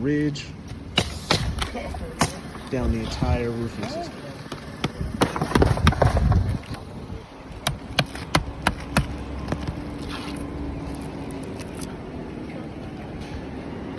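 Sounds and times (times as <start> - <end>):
hammer striking roofing nails: 1.0 - 2.6, 4.5 - 6.8, 7.6 - 9.8.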